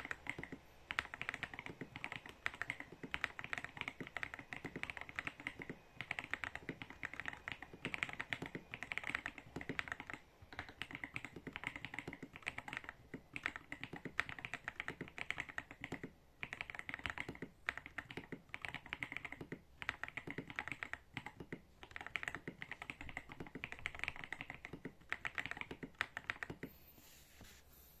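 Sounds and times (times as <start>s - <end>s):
typing on mechanical keyboard: 0.0s - 26.7s.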